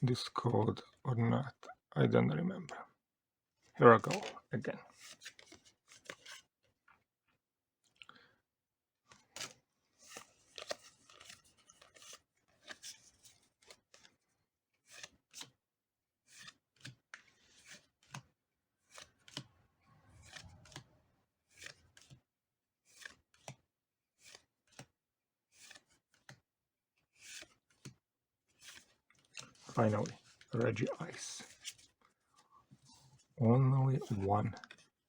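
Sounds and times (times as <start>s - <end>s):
foil wrapper and cards rustling: 29.7s - 31.4s.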